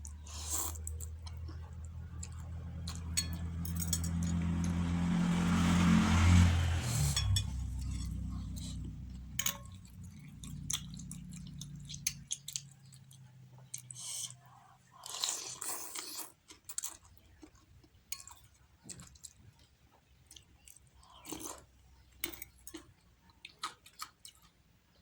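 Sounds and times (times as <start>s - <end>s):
vehicle engine hum passing: 0.0s - 14.0s
utensils clinking against bowl: 2.9s - 4.4s, 9.3s - 9.9s.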